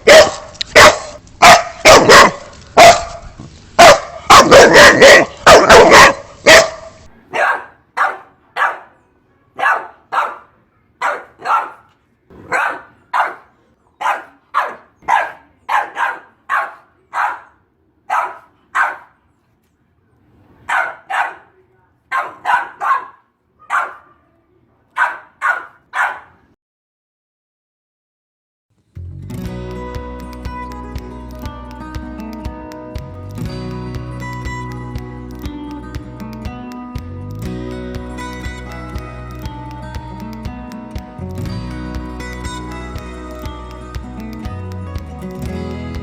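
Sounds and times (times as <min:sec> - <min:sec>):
dog barking: 0:00.0 - 0:03.2, 0:03.8 - 0:19.2, 0:20.7 - 0:21.5, 0:22.1 - 0:26.4.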